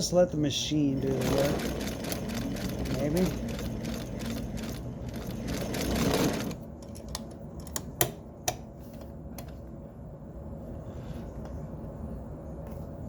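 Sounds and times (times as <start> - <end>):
sewing machine stitching: 1.0 - 6.6.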